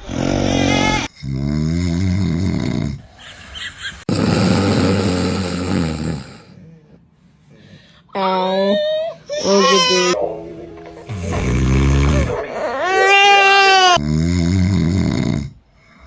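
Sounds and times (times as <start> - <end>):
person snoring loudly: 0.0 - 3.1, 4.1 - 6.7, 11.1 - 15.6.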